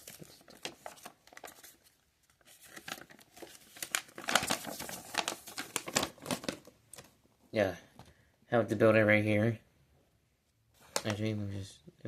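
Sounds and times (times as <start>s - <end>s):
paper pages rustling: 0.0s - 7.2s, 10.8s - 11.3s.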